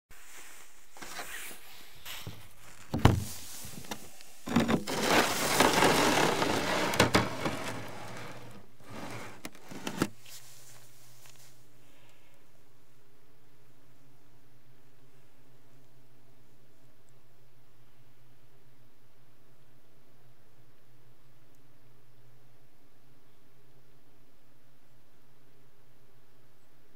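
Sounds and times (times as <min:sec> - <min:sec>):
scraping and rubbing on wood: 0:02.8 - 0:10.4
faint low hum: 0:05.7 - 0:26.9.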